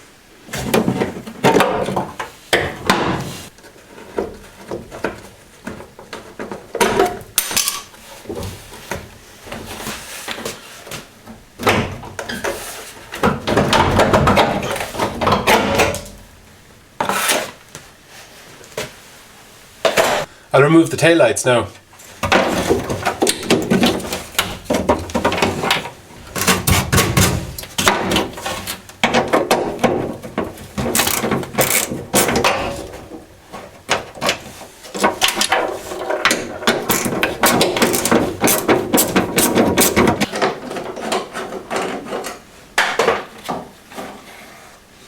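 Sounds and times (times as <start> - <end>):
hand tools clicking and knocking: 0.7 - 9.0, 11.6 - 16.2, 22.1 - 44.1.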